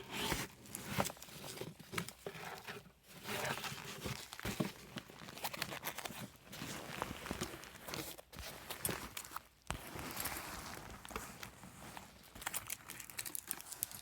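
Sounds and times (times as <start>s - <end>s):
packaging crinkling: 3.6s - 14.0s.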